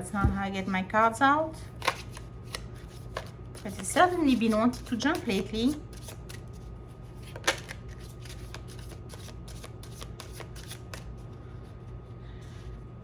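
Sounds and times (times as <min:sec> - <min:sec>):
cards being shuffled: 0:01.8 - 0:11.3.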